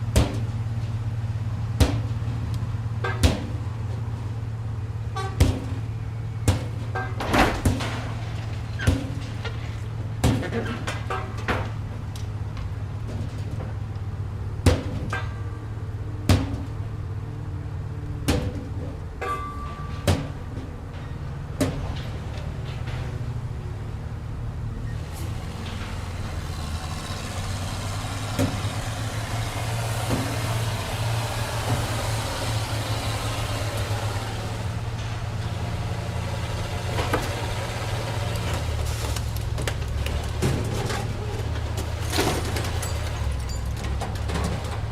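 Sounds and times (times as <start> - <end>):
vehicle engine idling: 23.3 - 44.9.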